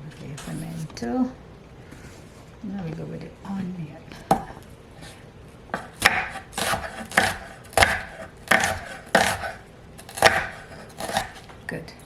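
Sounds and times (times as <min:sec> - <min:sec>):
knife slicing onion: 0:00.4 - 0:00.9, 0:05.8 - 0:11.4.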